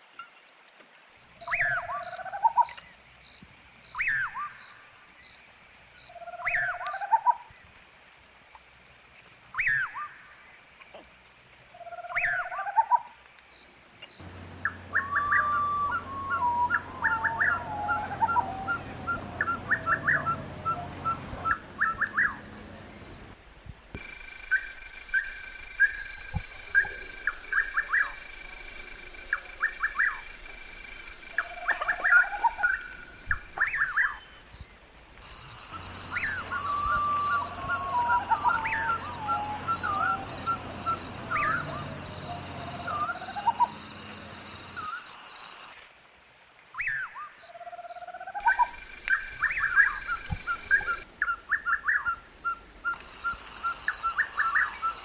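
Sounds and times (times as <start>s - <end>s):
bird call falling and rising: 14.2s - 23.4s, 24.0s - 34.4s, 35.2s - 45.0s, 48.4s - 52.2s
rapid bird chirps: 14.2s - 23.4s, 24.0s - 34.5s, 35.2s - 45.7s, 48.4s - 52.2s, 52.9s - 55.0s
high-pitched ringing: 24.0s - 34.0s, 48.4s - 51.0s.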